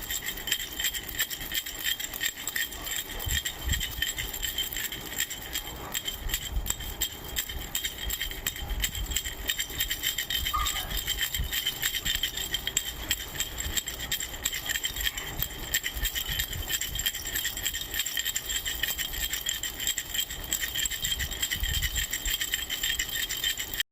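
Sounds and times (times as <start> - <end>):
baby rattle shaken: 0.0 - 23.9.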